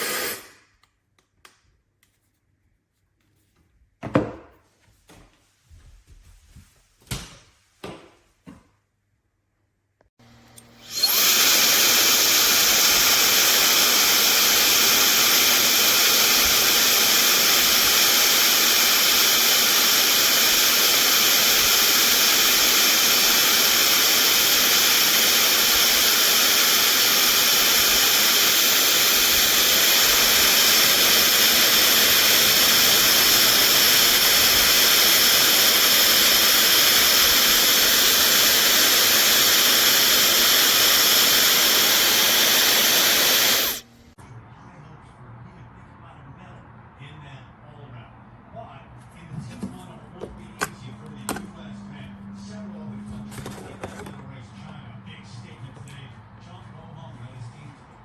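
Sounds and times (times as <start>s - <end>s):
hair dryer blowing air: 0.0s - 0.6s, 10.2s - 43.9s.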